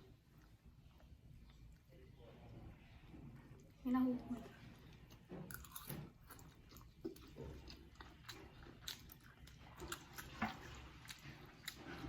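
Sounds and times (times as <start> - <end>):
person chewing: 4.9 - 12.0.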